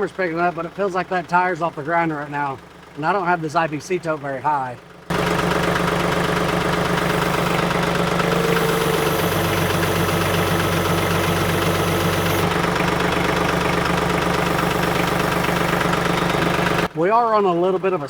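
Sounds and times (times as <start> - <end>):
tractor diesel engine running: 4.8 - 16.9.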